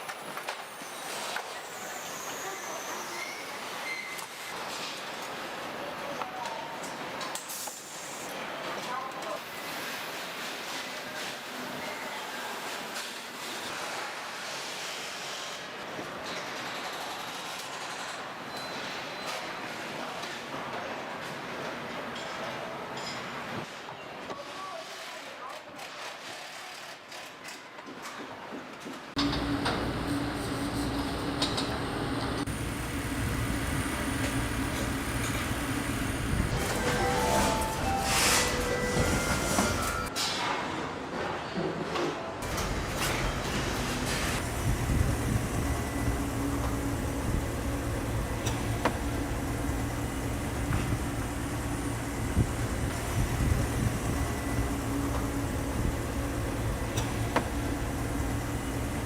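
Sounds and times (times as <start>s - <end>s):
low rumble of machinery: 29.2s - 37.8s, 42.5s - 59.0s
short high tones: 36.6s - 40.2s.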